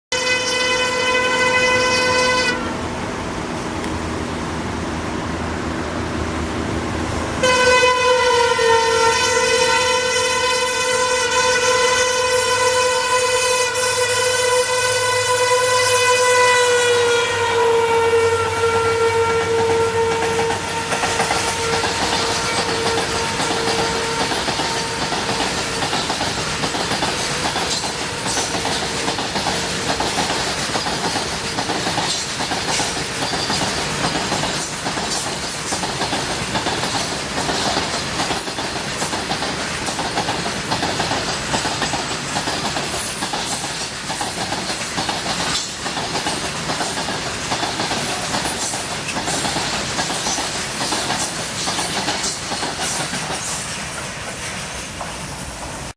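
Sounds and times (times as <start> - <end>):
locomotive horn blast: 0.1 - 2.9, 7.4 - 25.8
train rumbling past: 0.1 - 55.9
wheels clattering over rail joints: 20.4 - 55.2.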